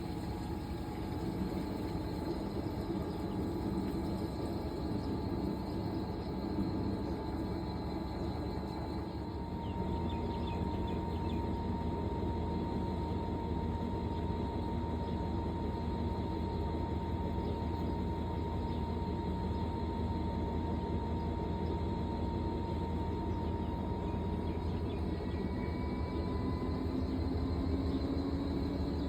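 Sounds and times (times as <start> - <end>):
thin whine: 0.0 - 29.0
washing machine humming: 0.0 - 29.0.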